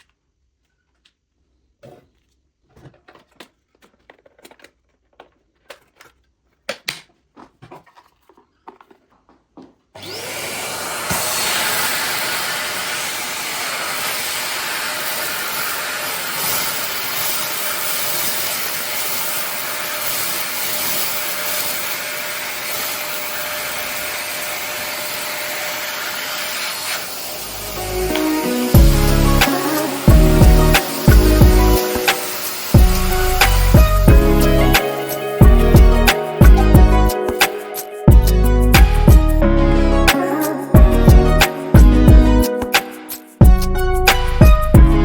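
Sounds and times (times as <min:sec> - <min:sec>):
vacuum cleaner running: 0:10.0 - 0:43.0.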